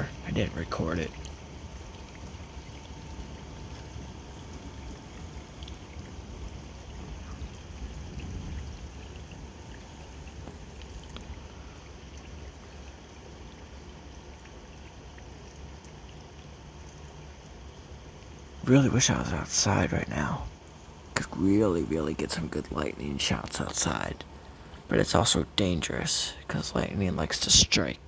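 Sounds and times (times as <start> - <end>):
low rumble: 0.0 - 11.6
faint dripping: 0.0 - 28.0
steady rain falling: 0.0 - 28.0.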